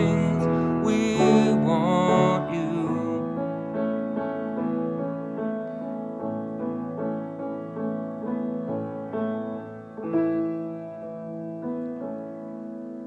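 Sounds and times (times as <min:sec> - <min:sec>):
person singing worship song: 0:00.0 - 0:03.5
piano chords: 0:00.0 - 0:13.0.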